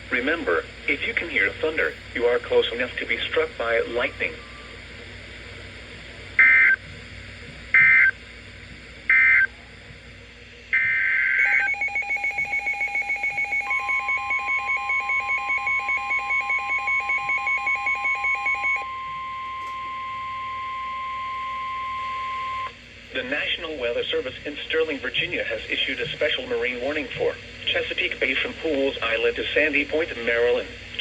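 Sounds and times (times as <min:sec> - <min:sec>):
steady warning alarm tone: 0:06.4 - 0:06.8, 0:07.7 - 0:08.2, 0:09.1 - 0:09.5, 0:10.7 - 0:22.8
screeching digital data bursts: 0:10.8 - 0:18.9
rapid two-pitch beeping: 0:10.8 - 0:22.7.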